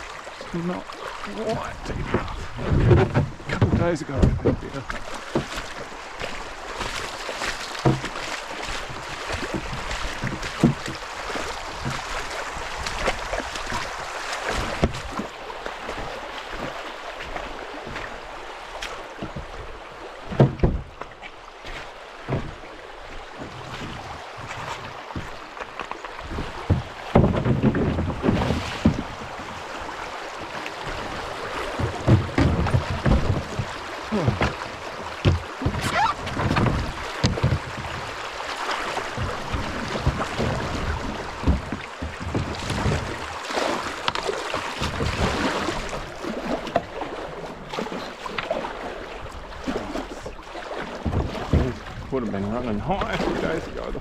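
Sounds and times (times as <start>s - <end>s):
creek water rippling: 0.0s - 54.0s
kayak paddle strokes: 0.0s - 54.0s
knocks and thumps: 1.5s - 5.6s, 7.8s - 8.2s, 9.4s - 11.0s, 14.6s - 15.2s, 20.3s - 21.0s, 26.3s - 29.5s, 31.7s - 38.1s, 39.2s - 43.2s, 51.0s - 51.9s.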